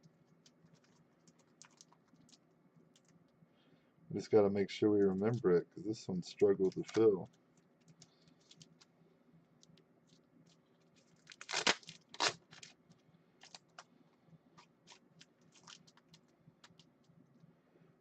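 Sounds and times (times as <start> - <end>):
plastic crinkling rustles: 0.3 - 3.2, 6.6 - 8.9, 9.6 - 13.9, 14.5 - 17.2.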